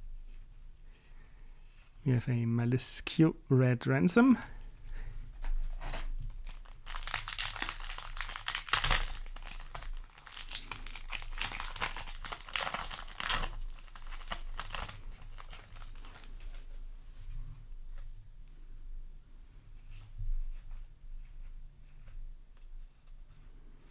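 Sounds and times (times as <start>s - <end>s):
wrapper and cards rustling: 4.1s - 16.8s
foil wrapper tearing and crinkling: 5.4s - 16.8s.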